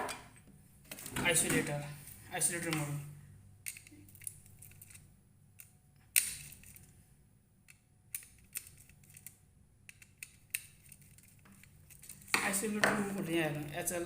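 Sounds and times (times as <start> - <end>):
small clicks and knocks of parts: 3.6 - 7.0, 7.6 - 12.4.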